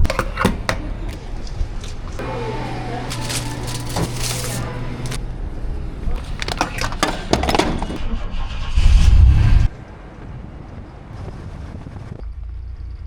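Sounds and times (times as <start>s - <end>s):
knocks and rattles: 0.0s - 2.2s, 6.1s - 8.0s.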